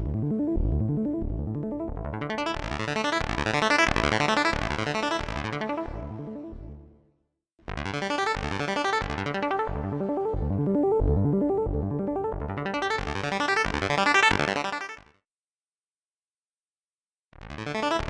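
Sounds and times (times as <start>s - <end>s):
pulsing synth bass: 0.0s - 6.9s, 8.4s - 14.5s
synthesizer repeating notes: 9.0s - 14.8s.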